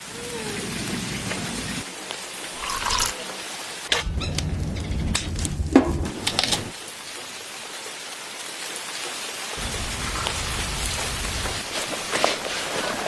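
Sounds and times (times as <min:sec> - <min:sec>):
steady rain falling: 0:00.0 - 0:13.0
low rumble: 0:04.0 - 0:06.7.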